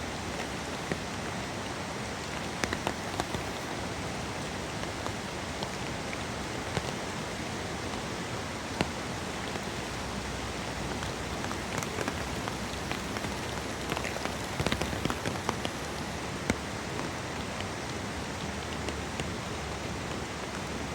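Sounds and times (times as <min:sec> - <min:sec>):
steady rain: 0:00.0 - 0:20.9
single raindrops striking: 0:08.7 - 0:19.4.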